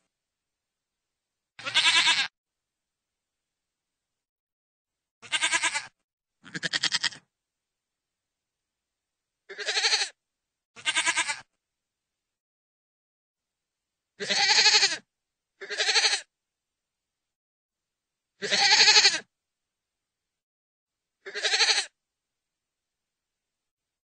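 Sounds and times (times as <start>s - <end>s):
goat bleating: 1.6s - 2.3s, 5.2s - 7.2s, 9.5s - 10.2s, 10.8s - 11.5s, 14.2s - 15.0s, 15.6s - 16.3s, 18.4s - 19.3s, 21.2s - 22.0s.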